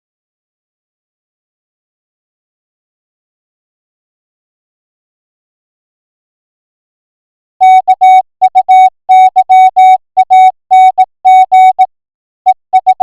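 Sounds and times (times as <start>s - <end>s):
morse code electronic tone: 7.6s - 11.9s, 12.5s - 13.0s.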